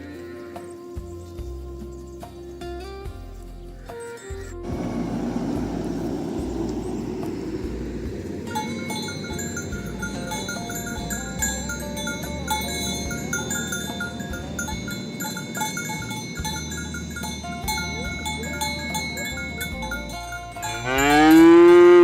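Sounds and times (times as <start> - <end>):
cow mooing: 4.7 - 19.6, 20.6 - 22.0.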